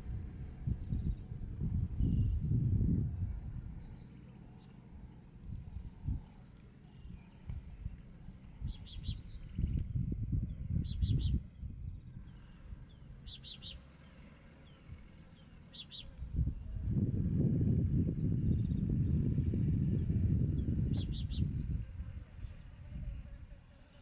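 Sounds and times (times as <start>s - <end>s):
birds calling: 3.6s - 16.2s, 17.9s - 24.0s.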